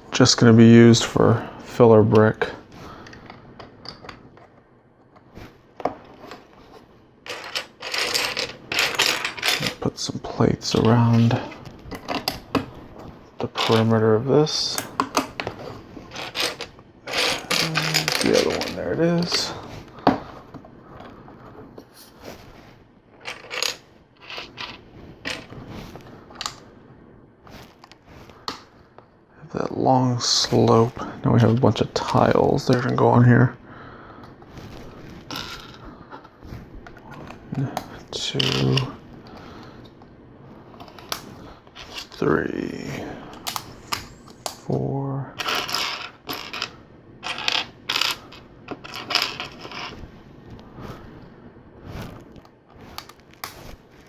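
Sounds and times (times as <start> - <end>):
plastic bricks clattering: 7.2 - 9.8, 16.1 - 19.5, 23.2 - 25.5, 45.4 - 49.9.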